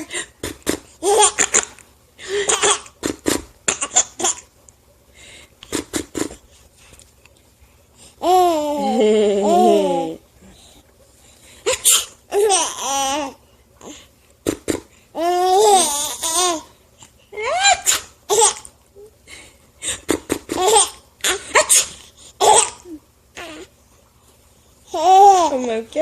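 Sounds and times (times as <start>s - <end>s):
baby laughing: 0.0s - 4.5s, 5.6s - 6.4s, 14.5s - 16.7s, 19.8s - 23.7s.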